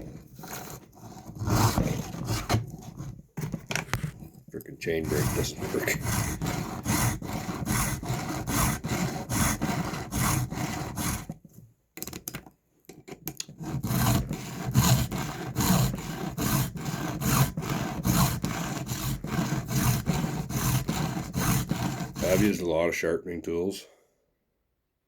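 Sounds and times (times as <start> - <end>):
file rasping on chainsaw chain: 0.4 - 3.0, 4.9 - 11.4, 13.6 - 22.6.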